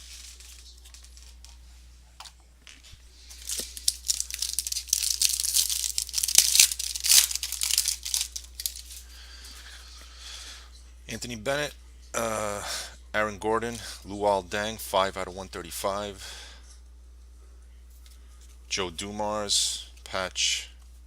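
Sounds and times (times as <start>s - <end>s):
foil wrapper tearing and crinkling: 0.0s - 1.5s, 3.3s - 9.0s.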